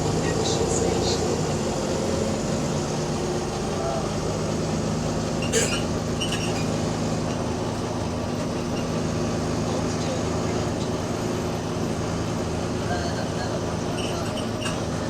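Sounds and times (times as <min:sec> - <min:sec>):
bus engine droning: 0:00.0 - 0:15.0.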